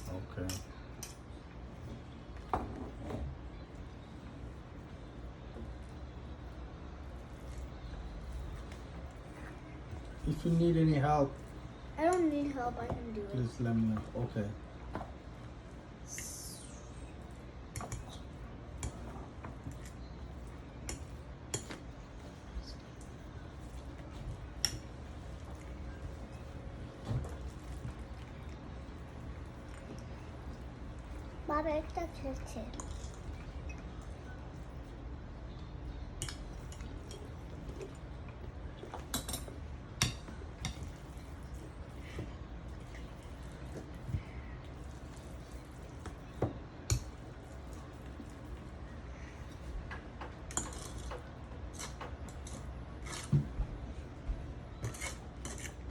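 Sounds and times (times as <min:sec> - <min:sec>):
low steady hum: 0:00.0 - 0:55.9
utensil scraping bowl: 0:54.8 - 0:55.9.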